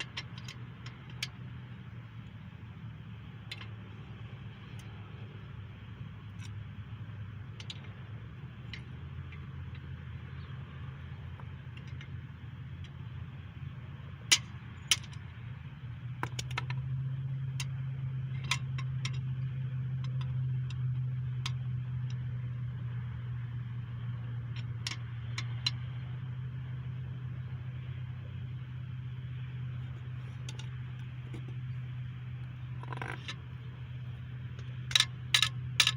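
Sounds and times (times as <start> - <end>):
steady low hum: 0.0 - 35.9
metal tools clinking: 34.9 - 35.9.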